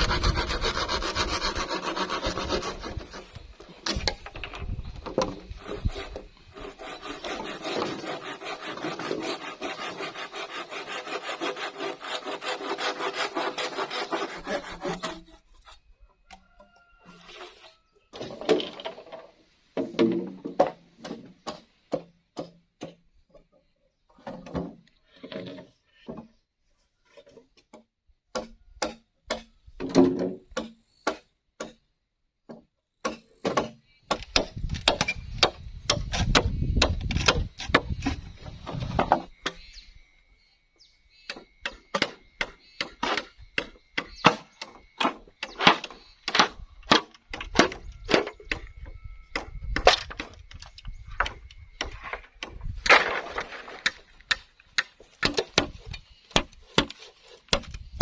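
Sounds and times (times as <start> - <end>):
chopping on wood: 32.5 - 38.2, 51.2 - 57.8.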